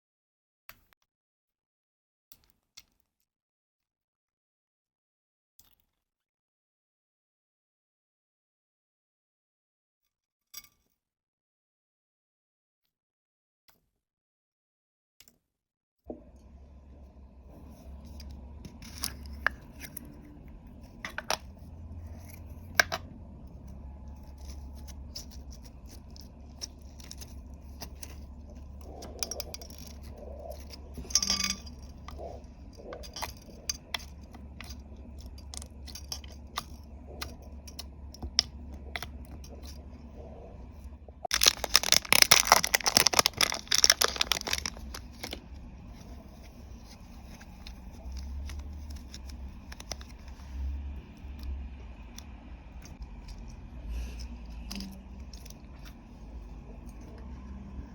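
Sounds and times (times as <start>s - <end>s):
rapid crackling: 16.2s - 50.4s.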